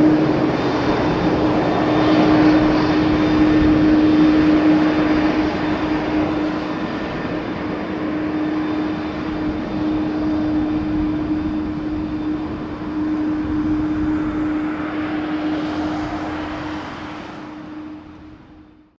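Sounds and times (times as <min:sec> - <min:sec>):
jet airliner engine roar: 0:00.0 - 0:18.9.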